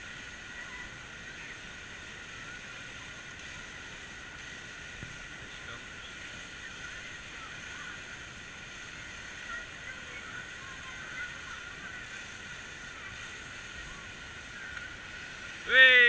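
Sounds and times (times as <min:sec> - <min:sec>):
water park ambience: 0:00.0 - 0:16.0
distant voices and shouts: 0:05.2 - 0:16.0.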